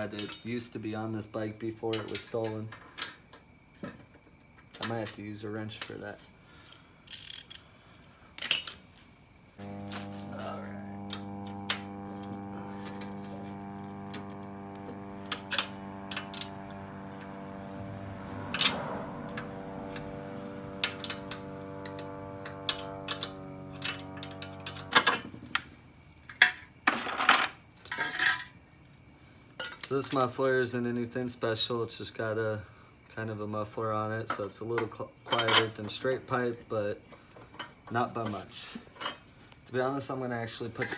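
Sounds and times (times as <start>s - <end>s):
steady hum: 9.6s - 26.0s.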